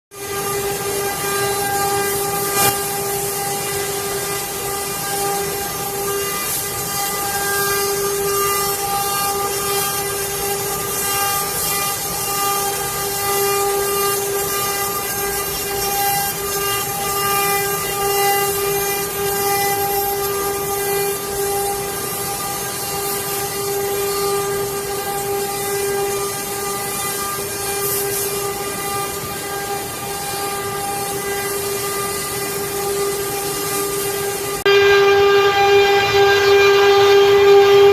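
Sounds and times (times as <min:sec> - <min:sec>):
cutting hiss: 0:00.2 - 0:37.9.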